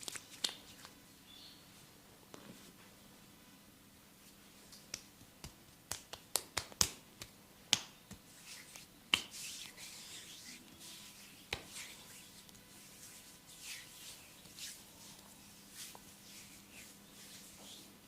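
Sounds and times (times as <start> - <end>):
hands rubbing on skin: 0.0 - 1.0, 4.6 - 17.9
sharp hand snaps: 4.7 - 9.4.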